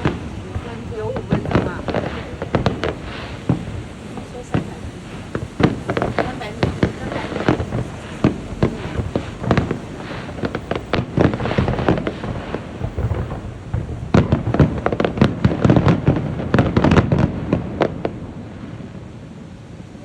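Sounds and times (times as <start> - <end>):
fireworks bangs and crackles: 0.0 - 20.0.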